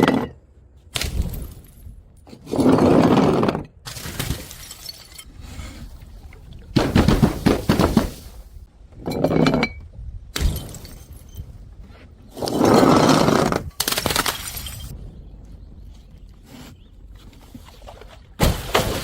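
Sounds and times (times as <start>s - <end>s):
glass bottles smashing: 3.9s - 5.3s, 10.4s - 11.4s, 13.8s - 14.9s
glass shards clinking: 4.0s - 5.4s, 14.0s - 14.9s.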